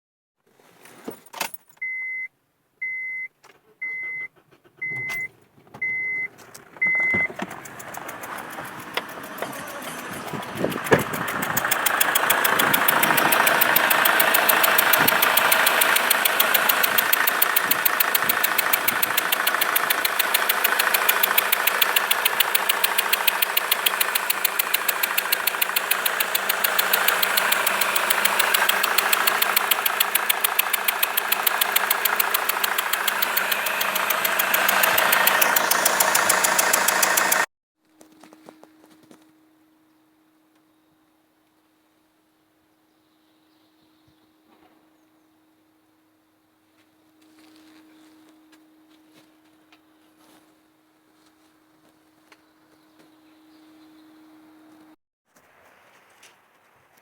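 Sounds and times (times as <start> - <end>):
short electronic warning beeps: 1.8 - 7.6
diesel engine idling with knock: 4.8 - 37.5.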